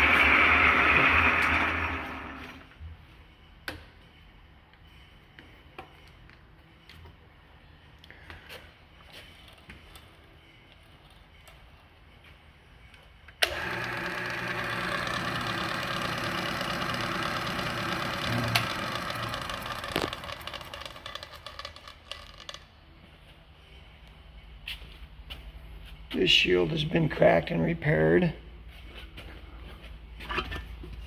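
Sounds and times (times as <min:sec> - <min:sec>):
milling machine spindle humming: 0:00.0 - 0:02.7, 0:13.4 - 0:22.2.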